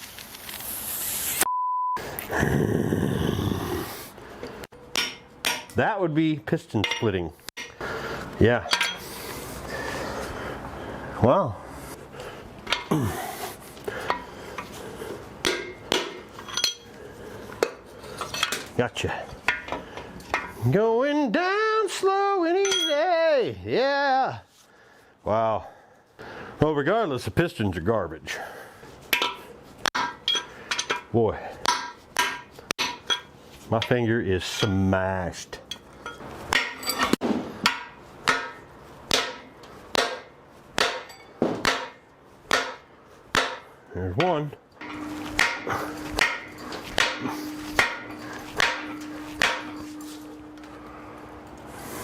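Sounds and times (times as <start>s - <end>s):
hammer striking metal: 4.9s - 5.8s, 15.4s - 16.9s, 35.7s - 50.9s
metal clinking and knocking: 15.5s - 16.9s, 22.6s - 23.0s, 35.6s - 38.6s, 40.9s - 41.7s.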